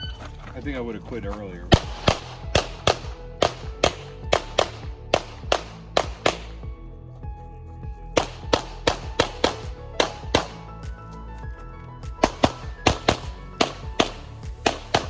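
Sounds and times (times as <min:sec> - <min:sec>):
background music: 0:00.0 - 0:15.0
rapid gunshots: 0:01.7 - 0:06.7, 0:08.2 - 0:10.6, 0:12.2 - 0:15.0.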